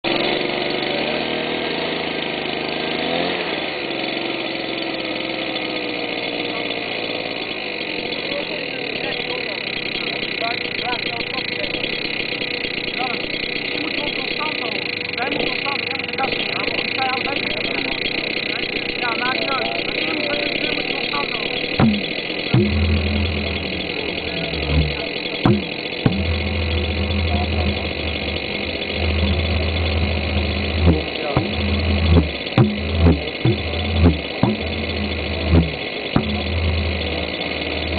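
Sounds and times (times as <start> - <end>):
jet engine idling: 3.4 - 37.9
low drone: 17.8 - 37.9
sharp pops: 20.5 - 37.9.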